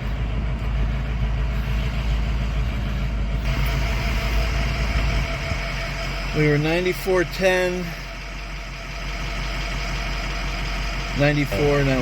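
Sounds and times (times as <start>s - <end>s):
vehicle engine idling: 0.0s - 12.0s.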